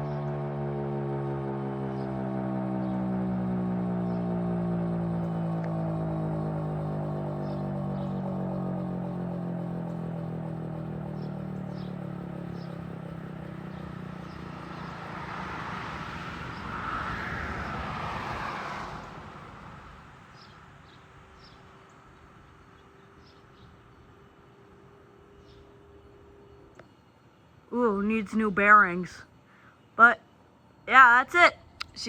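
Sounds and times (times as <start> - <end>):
warning siren winding down: 0.0 - 19.7
car passing: 0.0 - 26.5
birds chirping: 1.8 - 17.2, 20.2 - 32.0
faint steady hum: 3.6 - 17.0.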